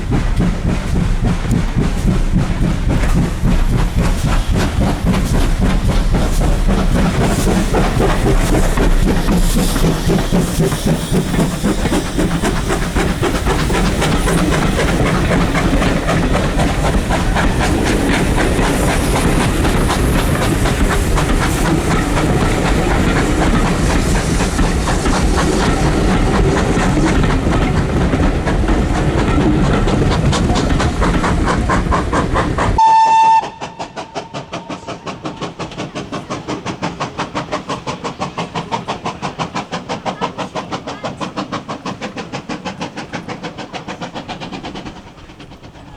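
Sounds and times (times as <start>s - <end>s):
steam locomotive exhaust beats: 0.0s - 45.9s
train wheel clatter: 0.0s - 45.9s
high train whistle blast: 32.8s - 35.0s.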